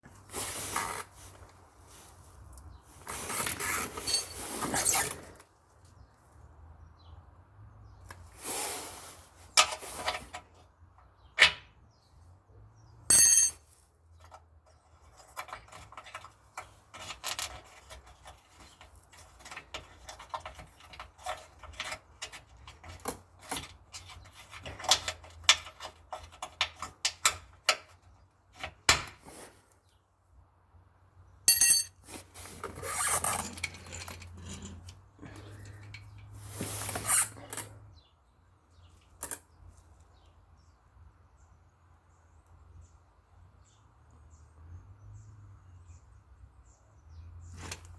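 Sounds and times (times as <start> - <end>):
tools scraping metal: 3.3 - 5.2, 13.1 - 13.6, 31.5 - 37.9
metallic clank with ring: 13.1 - 13.6, 31.5 - 32.0.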